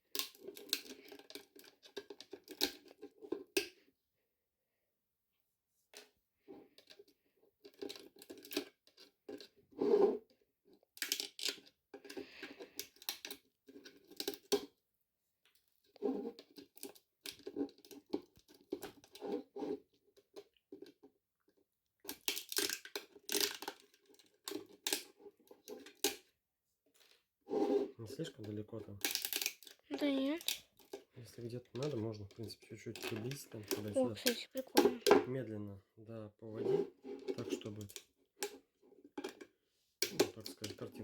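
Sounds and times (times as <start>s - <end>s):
rustling and crackling handling: 10.7s - 14.7s, 26.9s - 35.4s.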